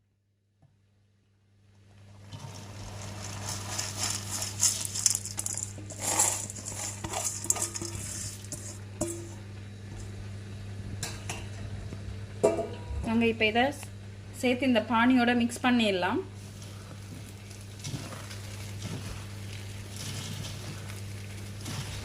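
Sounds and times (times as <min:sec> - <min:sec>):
steady low hum: 0:01.8 - 0:22.0
crackly rustling in syrup: 0:01.9 - 0:08.9, 0:16.4 - 0:22.0.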